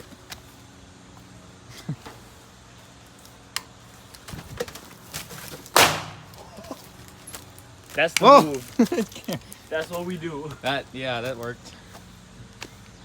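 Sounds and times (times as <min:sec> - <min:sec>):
firecracker bang: 0:05.7 - 0:06.4
faint clicks and shuffling: 0:06.4 - 0:13.0.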